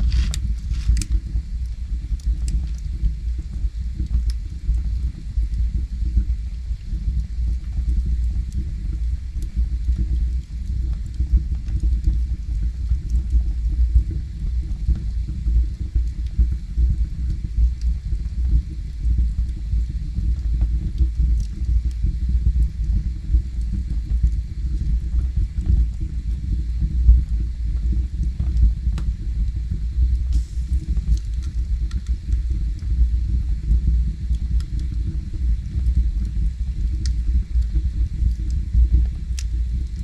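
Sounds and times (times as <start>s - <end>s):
faint fire crackles: 0.0s - 40.0s
low rumble of burning logs: 0.0s - 40.0s.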